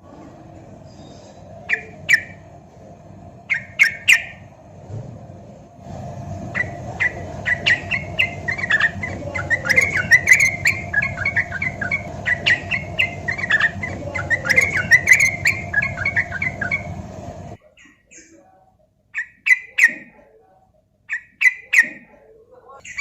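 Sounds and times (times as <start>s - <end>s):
bulbul singing: 0.8s - 2.5s, 3.4s - 4.6s, 6.4s - 18.4s, 22.8s - 23.0s.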